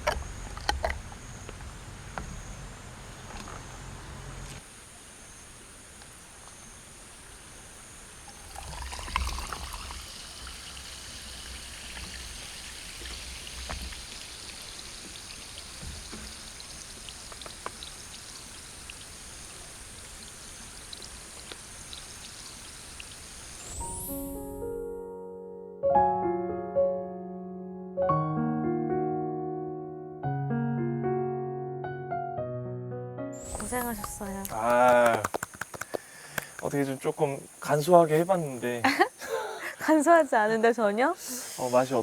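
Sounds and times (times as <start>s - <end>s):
stream water flowing: 8.2s - 24.0s.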